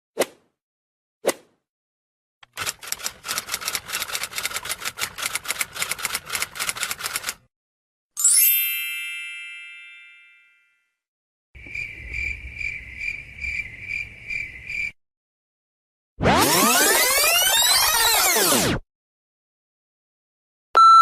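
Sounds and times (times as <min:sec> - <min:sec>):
typewriter carriage-return bell: 0:02.5 - 0:07.4.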